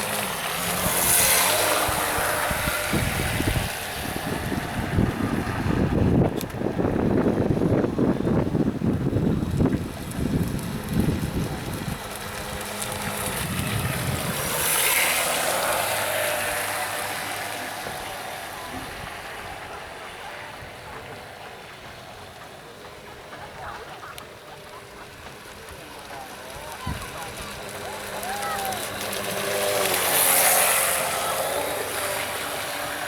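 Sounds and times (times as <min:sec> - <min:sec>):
water spray: 0:00.0 - 0:04.8, 0:09.9 - 0:21.8, 0:25.2 - 0:33.0
model boat motor whine: 0:00.0 - 0:33.0.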